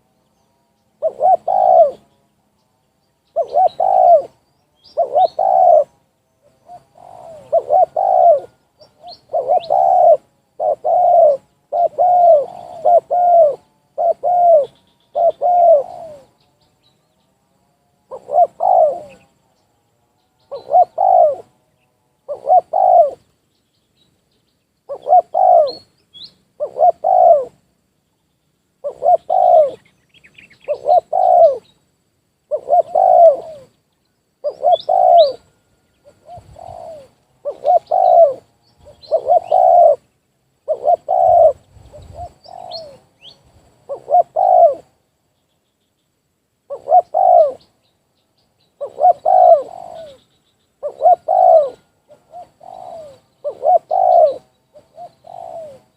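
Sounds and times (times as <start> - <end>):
small birds chirping: 0.0 - 55.9
doves cooing: 0.8 - 2.2, 3.3 - 16.5, 18.0 - 19.6, 20.4 - 23.3, 24.9 - 25.9, 26.6 - 27.6, 28.8 - 31.7, 32.5 - 33.8, 34.4 - 45.0, 46.7 - 47.8, 48.8 - 55.9.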